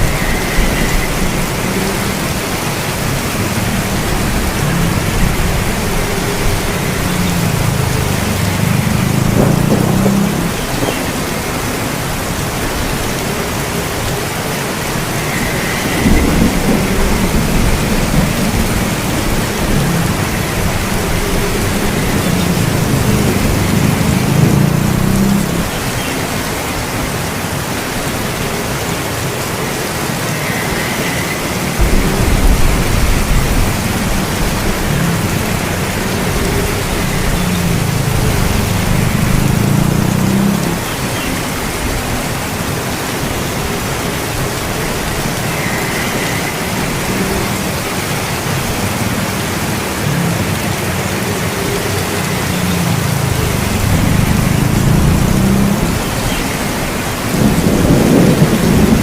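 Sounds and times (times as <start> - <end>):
rolling thunder: 0.0 - 13.0, 15.0 - 25.9, 31.6 - 40.8, 53.0 - 59.0
heavy rain: 0.0 - 59.0.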